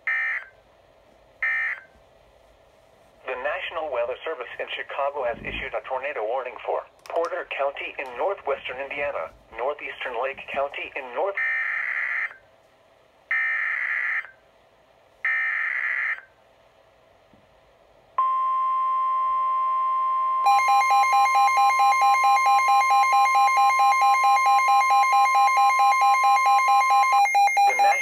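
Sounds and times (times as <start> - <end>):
steady warning alarm tone: 1.4 - 1.9, 11.4 - 12.4, 13.3 - 14.4, 18.2 - 28.0
fast alert beeping: 20.5 - 28.0.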